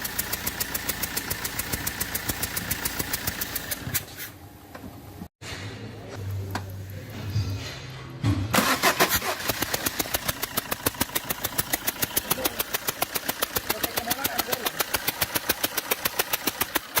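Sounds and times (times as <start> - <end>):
diesel engine starting and idling: 0.0 - 4.1, 8.5 - 17.0
puffing tick from engine: 0.0 - 4.2, 9.2 - 17.0.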